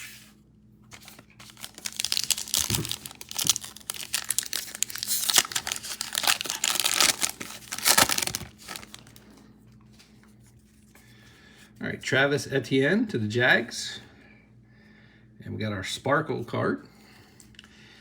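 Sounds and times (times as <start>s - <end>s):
plastic wrapper crinkling and tearing: 0.9s - 9.2s.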